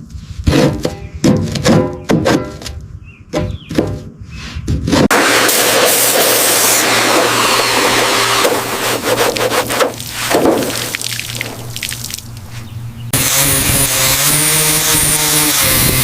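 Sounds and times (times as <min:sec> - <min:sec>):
rasping scraping strokes: 0:04.4 - 0:11.6.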